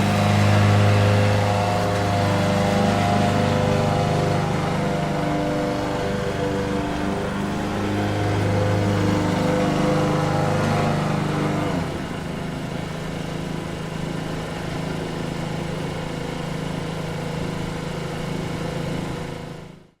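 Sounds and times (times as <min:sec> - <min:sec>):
lawn mower engine running: 0:00.0 - 0:19.9.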